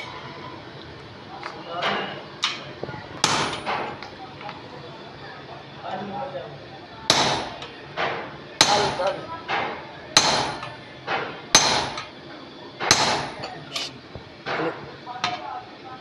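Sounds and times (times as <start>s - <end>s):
hammer striking metal: 3.2s - 3.8s, 7.1s - 7.8s, 8.6s - 9.2s, 10.2s - 10.8s, 11.6s - 12.1s, 12.9s - 13.9s.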